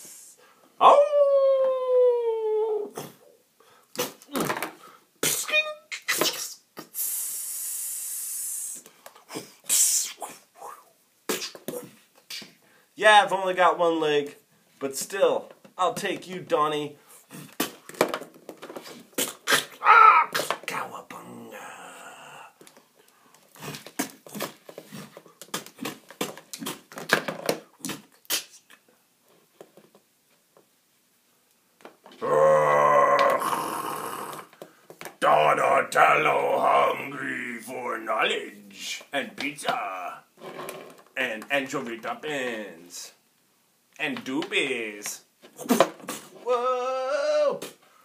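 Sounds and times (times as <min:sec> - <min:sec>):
mouth-made hissing whoosh: 0:00.0 - 0:00.5, 0:05.2 - 0:08.8, 0:09.5 - 0:11.6
mouth clicks: 0:05.2 - 0:12.6, 0:27.8 - 0:28.8.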